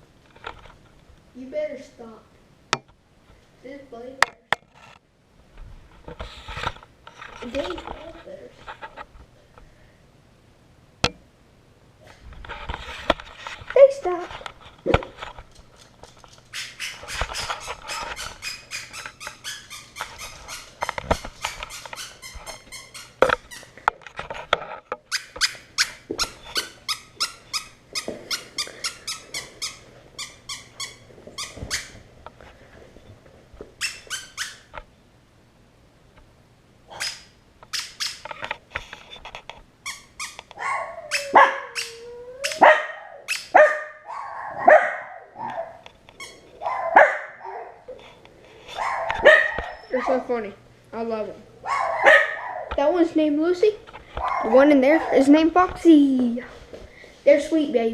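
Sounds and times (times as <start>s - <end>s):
dogs barking: 40.6s - 41.8s, 42.4s - 45.9s, 46.6s - 48.0s, 48.8s - 50.2s, 51.6s - 52.8s, 54.2s - 55.3s.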